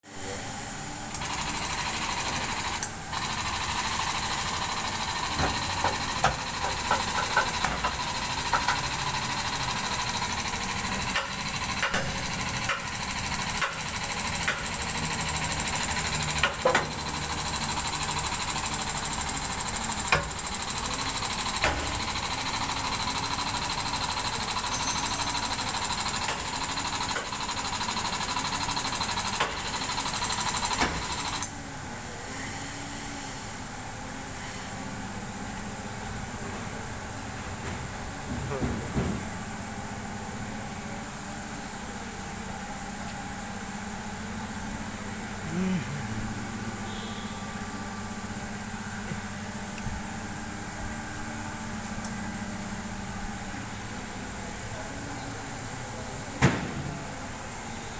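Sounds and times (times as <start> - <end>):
machine rattling and whining: 1.1 - 31.5.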